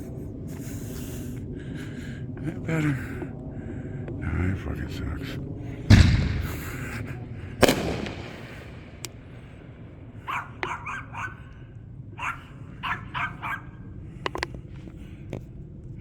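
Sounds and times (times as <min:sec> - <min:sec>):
firework bang: 0:05.9 - 0:09.9
dog barking: 0:10.2 - 0:11.5, 0:12.2 - 0:13.8.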